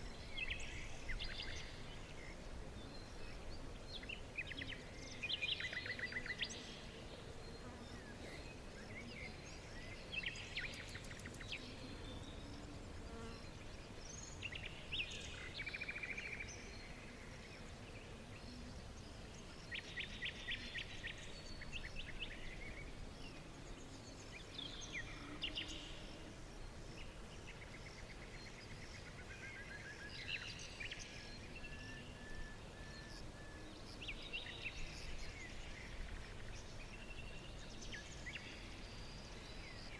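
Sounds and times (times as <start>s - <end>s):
low background noise: 0.0s - 39.9s
songbirds chirping and trilling: 0.0s - 39.9s.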